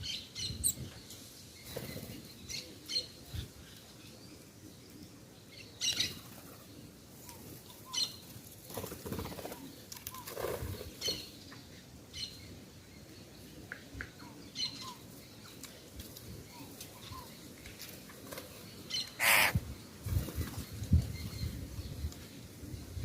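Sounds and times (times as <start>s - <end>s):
birds chirping: 18.4s - 20.0s
bird wingbeats: 19.2s - 20.6s.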